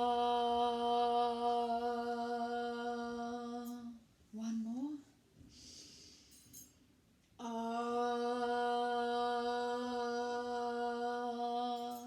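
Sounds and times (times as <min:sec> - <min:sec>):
woman breathing in: 0:05.4 - 0:06.5
woman holding long vocal tone: 0:07.4 - 0:12.0.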